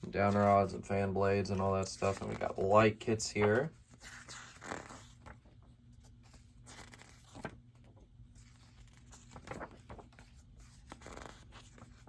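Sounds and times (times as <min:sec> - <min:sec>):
faint steady hum: 0:00.0 - 0:12.0
paper pages turning: 0:00.0 - 0:12.0.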